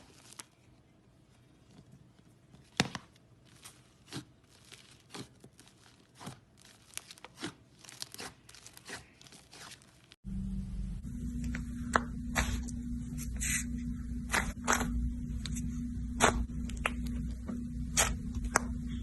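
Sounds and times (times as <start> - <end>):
steady low tone: 10.2 - 19.0.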